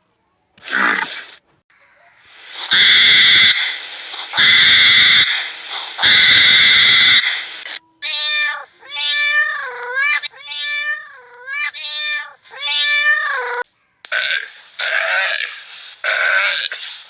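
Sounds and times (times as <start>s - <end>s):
cat meowing: 6.0s - 7.3s, 8.0s - 16.8s.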